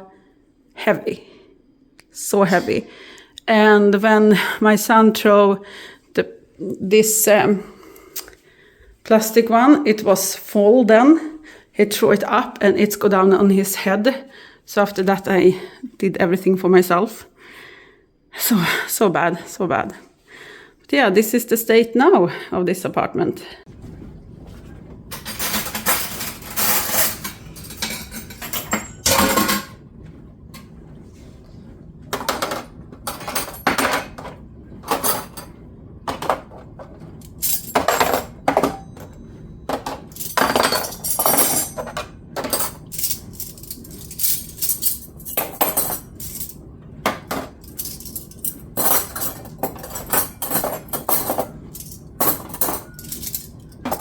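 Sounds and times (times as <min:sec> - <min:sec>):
dishes and cutlery clattering: 0:25.2 - 0:29.8, 0:37.4 - 0:39.1, 0:39.7 - 0:54.0.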